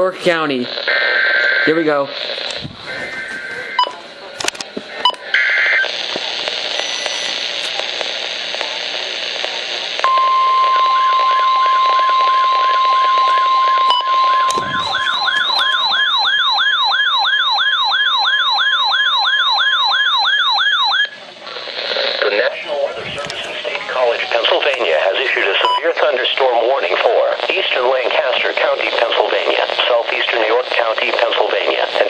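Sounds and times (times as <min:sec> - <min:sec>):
radio hiss: 0:00.0 - 0:16.0, 0:21.2 - 0:32.0
steady warning alarm tone: 0:10.1 - 0:21.2
warbling alert siren: 0:10.8 - 0:21.2.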